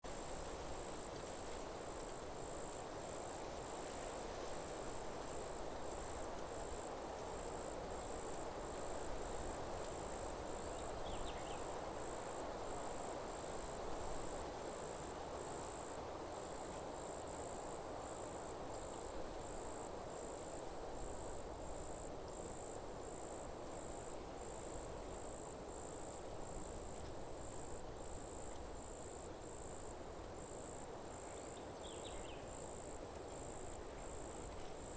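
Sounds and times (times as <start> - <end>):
forest ambience hiss: 0.0 - 34.9
faint insect chirp: 0.1 - 34.9.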